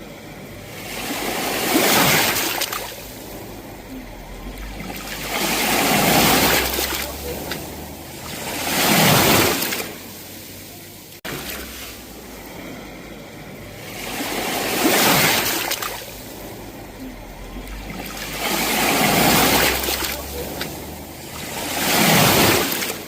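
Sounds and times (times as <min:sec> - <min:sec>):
sea waves breaking on shore: 0:00.0 - 0:23.0.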